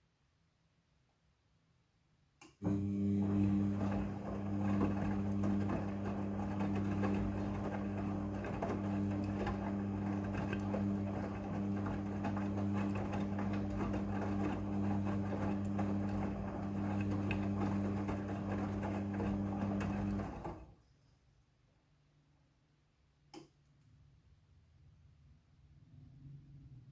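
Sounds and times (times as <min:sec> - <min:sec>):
washing machine running: 0:02.6 - 0:20.7.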